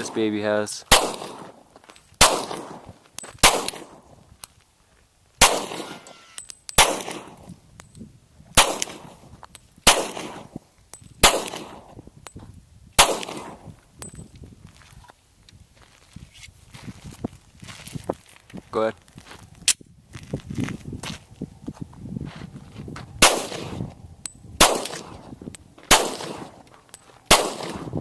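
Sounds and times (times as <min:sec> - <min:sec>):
pistol shots echoing: 0:00.0 - 0:01.6, 0:02.2 - 0:04.0, 0:05.4 - 0:07.4, 0:08.6 - 0:09.1, 0:09.8 - 0:10.5, 0:11.2 - 0:11.9, 0:13.0 - 0:13.6, 0:23.2 - 0:23.8, 0:24.6 - 0:25.2, 0:25.9 - 0:26.6, 0:27.3 - 0:28.0.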